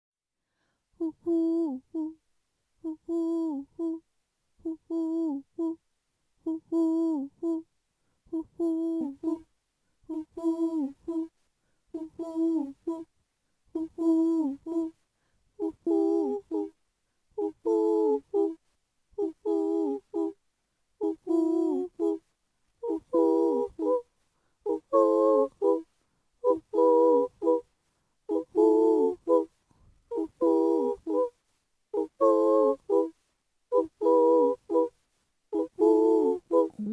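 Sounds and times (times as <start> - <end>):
person humming: 1.0 - 2.2, 2.8 - 4.0, 4.6 - 5.8, 15.6 - 16.7, 22.8 - 24.0, 35.6 - 36.9.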